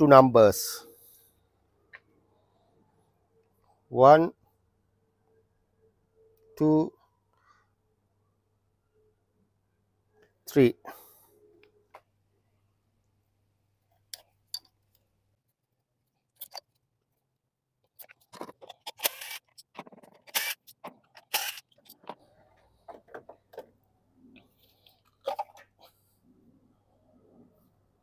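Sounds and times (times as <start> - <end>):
car parts clicking and knocking: 21.8 - 23.8.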